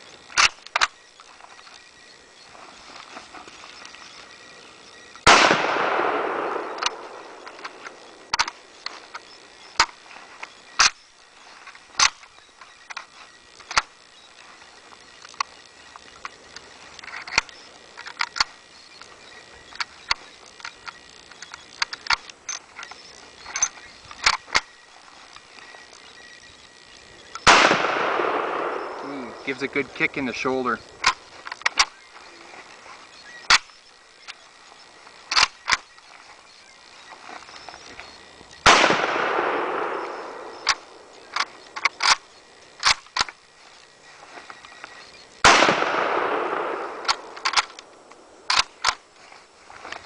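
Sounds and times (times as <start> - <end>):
faint sharp cracks and clicks: 0.1 - 1.9, 5.1 - 50.0
rifle shot with echo: 5.2 - 8.6, 27.4 - 29.7, 38.6 - 42.2, 45.4 - 48.8.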